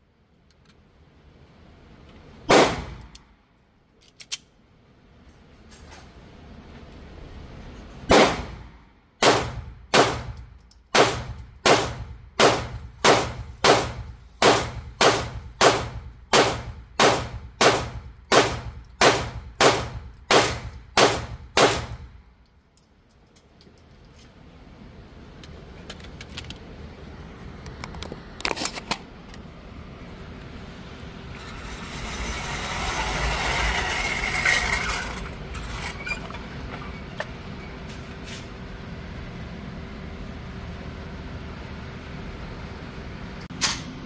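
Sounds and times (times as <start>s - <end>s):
pistol shots: 2.5s - 3.1s, 8.1s - 10.4s, 11.0s - 22.0s.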